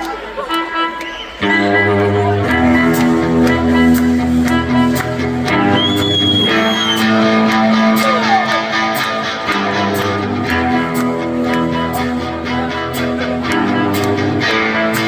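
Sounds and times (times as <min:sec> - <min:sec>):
live band instrumental: 0:01.3 - 0:15.0.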